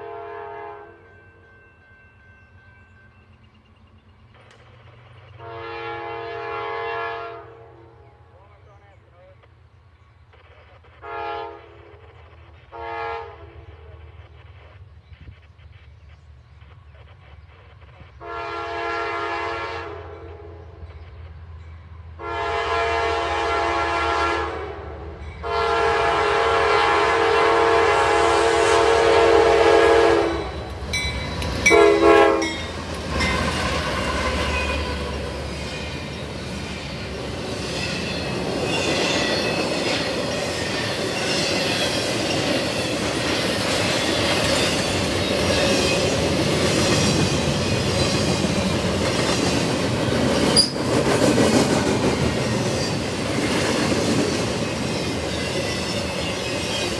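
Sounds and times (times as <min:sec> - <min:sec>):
locomotive air horn blasts: 0:00.0 - 0:01.1, 0:05.4 - 0:08.1, 0:11.0 - 0:12.0, 0:12.7 - 0:13.9, 0:18.2 - 0:20.6, 0:22.2 - 0:30.8, 0:31.6 - 0:35.3
wheels rumbling on rail: 0:00.0 - 0:06.6, 0:08.0 - 0:56.9
wheels clickety-clack: 0:32.4 - 0:56.9
wheel squeal: 0:50.4 - 0:50.9.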